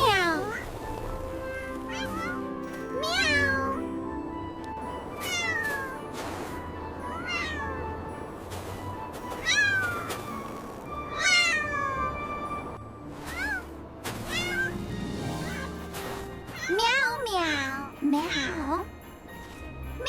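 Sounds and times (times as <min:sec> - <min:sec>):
soft background music: 0:00.0 - 0:20.0
kitten meowing: 0:01.6 - 0:02.4, 0:14.3 - 0:14.8.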